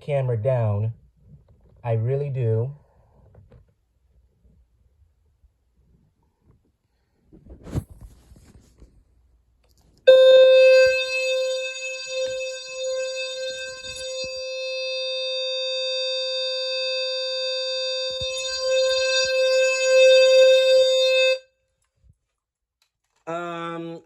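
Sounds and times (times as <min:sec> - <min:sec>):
low buzzing fire alarm: 0:10.1 - 0:21.6.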